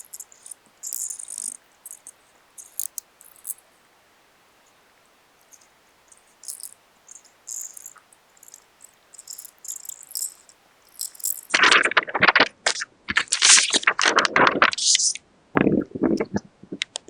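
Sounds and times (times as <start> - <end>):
loud crinkling and crackling: 0.0 - 3.8
craft materials rustling: 0.0 - 3.9, 4.5 - 11.6.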